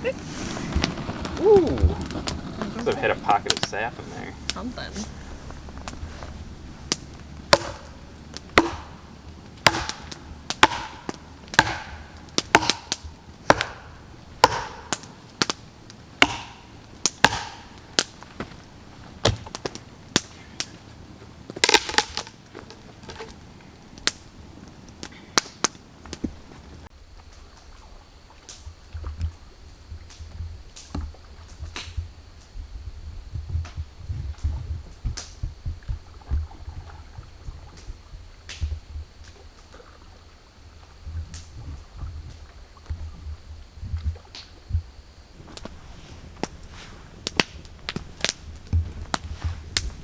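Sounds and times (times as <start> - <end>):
dull low thumps: 0.0 - 12.3, 32.0 - 39.2
axe chopping wood: 6.9 - 15.6, 16.2 - 18.6.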